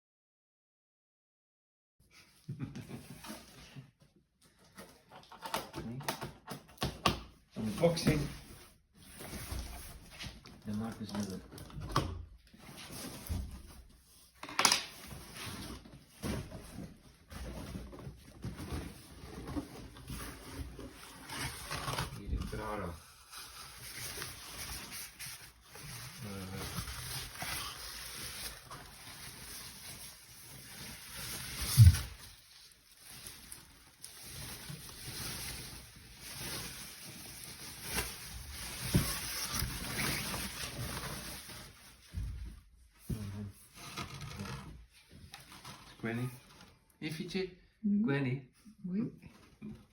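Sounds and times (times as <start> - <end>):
rustling and handling noise: 7.3 - 47.0.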